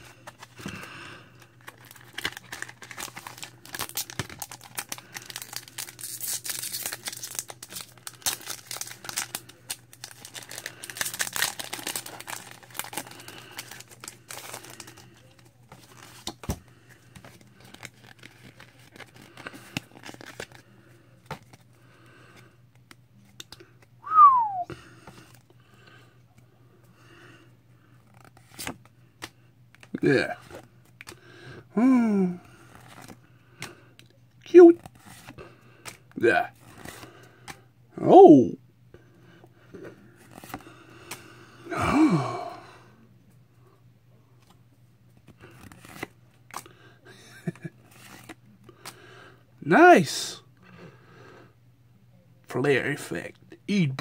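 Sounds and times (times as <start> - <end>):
low steady hum: 0.0 - 54.0
foil wrapper tearing and crinkling: 1.6 - 16.3, 17.6 - 20.6.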